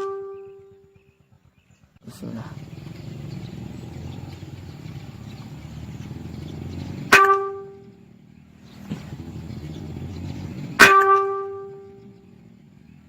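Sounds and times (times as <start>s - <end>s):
metallic ringing tone: 10.7s - 12.2s.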